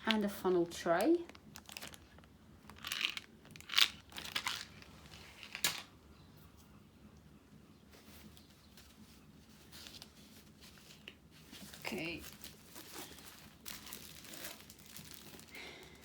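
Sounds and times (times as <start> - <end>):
plastic packaging crinkling: 0.9 - 5.9, 9.7 - 16.0.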